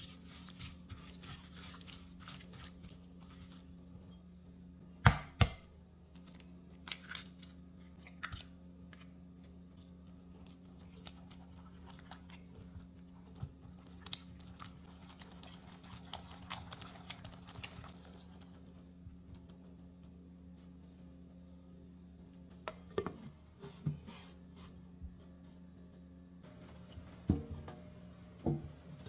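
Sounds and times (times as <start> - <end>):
steady low hum: 0.0 - 29.0
crunchy squishy food noises: 6.1 - 9.2.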